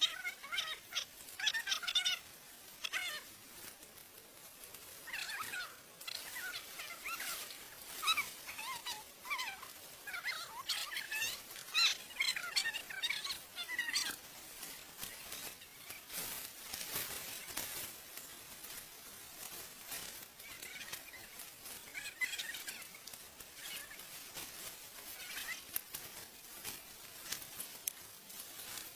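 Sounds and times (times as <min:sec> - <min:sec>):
animal chirping calls: 0:00.0 - 0:03.3, 0:05.0 - 0:14.2, 0:20.4 - 0:24.2
light crackling rustle: 0:00.0 - 0:28.9.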